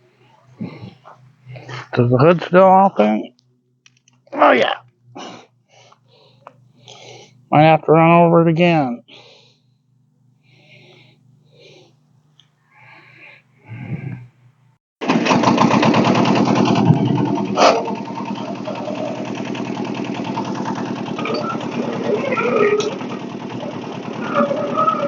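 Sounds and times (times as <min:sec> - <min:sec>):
diesel engine chugging: 0:00.0 - 0:03.2, 0:15.0 - 0:25.0
faint low hum: 0:00.0 - 0:14.8.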